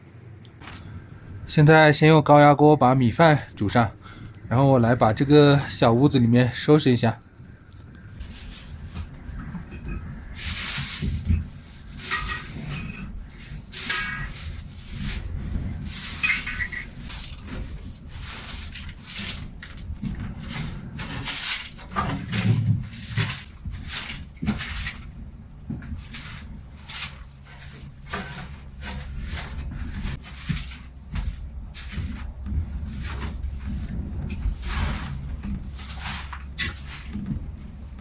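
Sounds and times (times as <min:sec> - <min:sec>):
strong wind rumble: 0:00.6 - 0:38.0
scraping and knocking in metal hut: 0:08.2 - 0:38.0.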